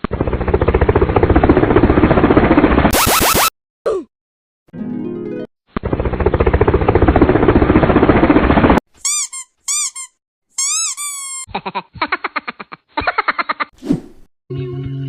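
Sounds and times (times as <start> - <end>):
stuttering pulse: 0.0 - 3.5, 5.8 - 8.8
cartoon rattling buzz: 2.9 - 3.5
squeaky chirps: 9.0 - 11.5.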